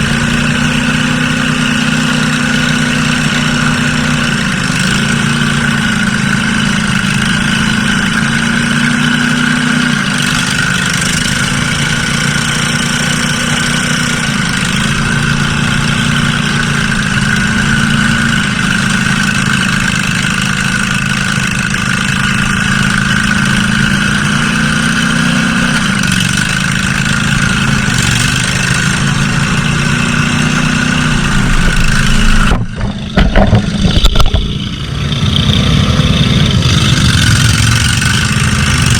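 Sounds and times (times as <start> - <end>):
high whine: 0.0 - 38.9
lawn mower engine running: 0.0 - 38.9
knocks: 32.3 - 34.6.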